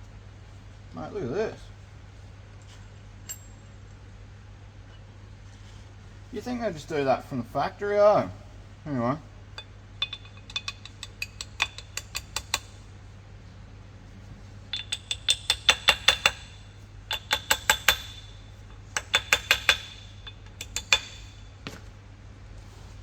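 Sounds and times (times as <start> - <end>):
steady low hum: 0.0 - 23.0
metal-on-metal tapping: 9.6 - 12.7, 14.7 - 18.4, 19.0 - 21.3.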